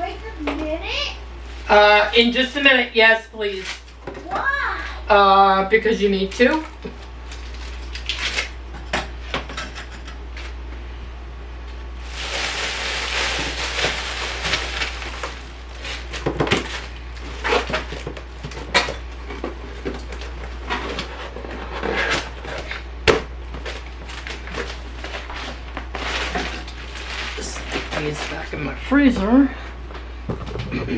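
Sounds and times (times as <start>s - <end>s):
dishes and utensils clattering: 8.8s - 10.2s.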